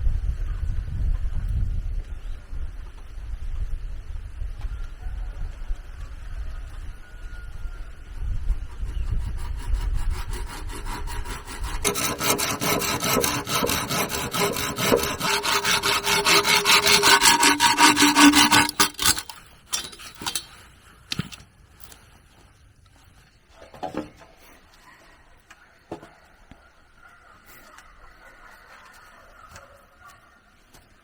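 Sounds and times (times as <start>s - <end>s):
hand saw cutting: 8.8s - 21.4s.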